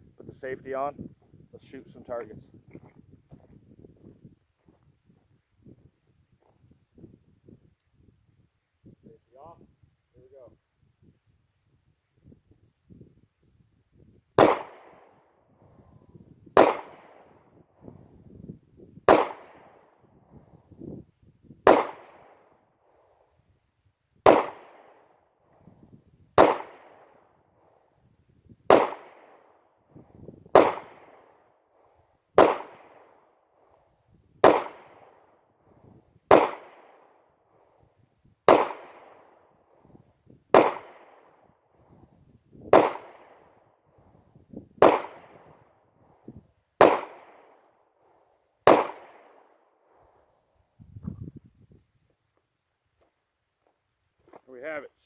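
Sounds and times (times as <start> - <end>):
pistol shots with ringing echo: 14.4 - 17.6, 19.1 - 20.0, 21.7 - 22.6, 24.2 - 25.1, 26.4 - 27.3, 28.7 - 29.6, 30.4 - 31.5, 32.4 - 33.2, 34.4 - 35.3, 36.3 - 37.2, 38.5 - 39.5, 40.5 - 41.5, 42.6 - 43.6, 44.8 - 45.6, 46.8 - 47.7, 48.6 - 49.5.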